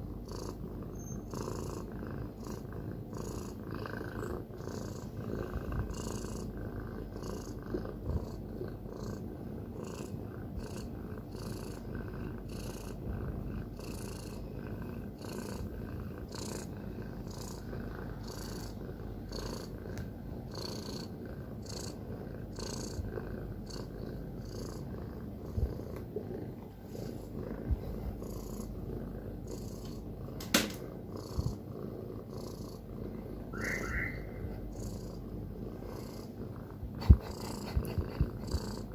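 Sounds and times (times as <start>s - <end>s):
cat purring: 0.0s - 38.9s
brief high-pitched sound: 33.6s - 34.6s.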